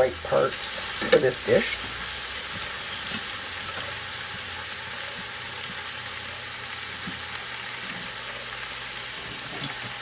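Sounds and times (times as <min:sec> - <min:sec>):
food sizzling in a hot pan: 0:00.0 - 0:10.0.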